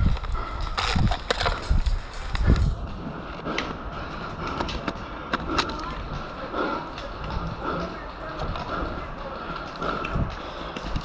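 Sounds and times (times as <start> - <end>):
twigs snapping underfoot: 0.0 - 2.8.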